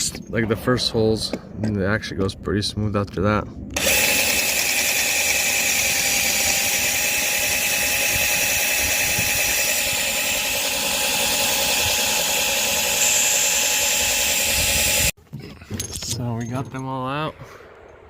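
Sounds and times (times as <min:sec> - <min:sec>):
power drill cutting steel: 0:03.8 - 0:15.2.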